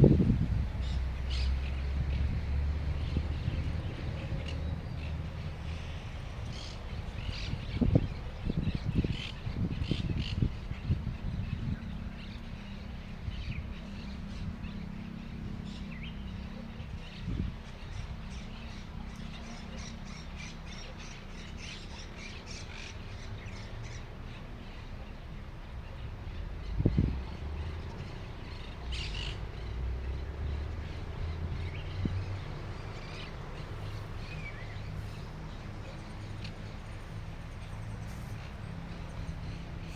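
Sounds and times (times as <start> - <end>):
low steady rumble: 0.0 - 20.6
small birds chirping: 0.1 - 39.9.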